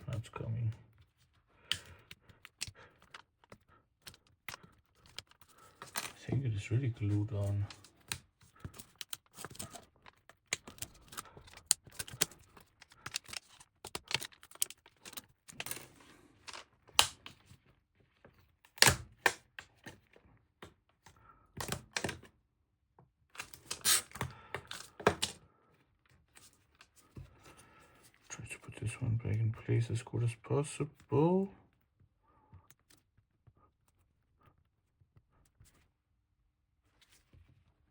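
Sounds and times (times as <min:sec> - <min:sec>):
small tools clicking and scraping: 0:08.6 - 0:16.7.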